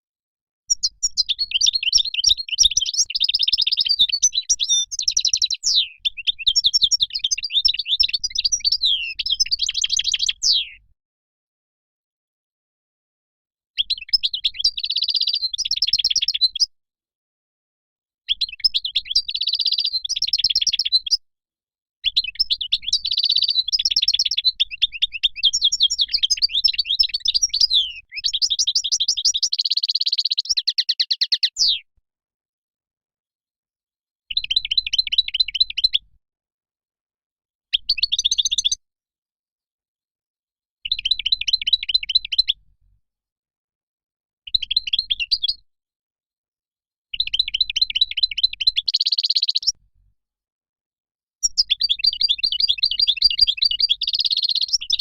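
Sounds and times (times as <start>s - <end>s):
finch twittering and trilling: 0.7s - 10.7s, 18.4s - 21.1s, 22.1s - 31.8s, 51.5s - 55.0s.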